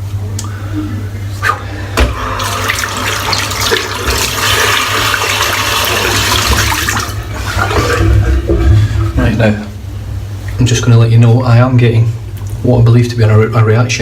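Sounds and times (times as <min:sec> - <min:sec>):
water tap running into sink: 0:02.0 - 0:08.6.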